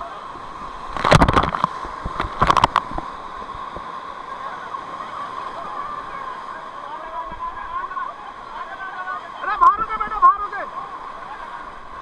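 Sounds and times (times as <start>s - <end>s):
loud water splashes: 0.0s - 12.0s
rushing water: 0.0s - 12.0s.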